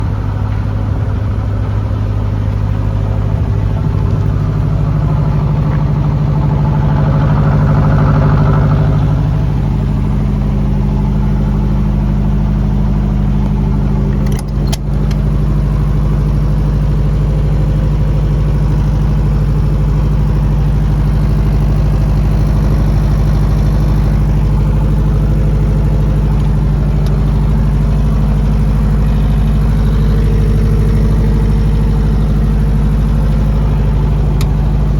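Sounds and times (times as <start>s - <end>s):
diesel generator running: 0.0s - 34.9s
clicks: 14.1s - 15.3s, 34.4s - 34.7s.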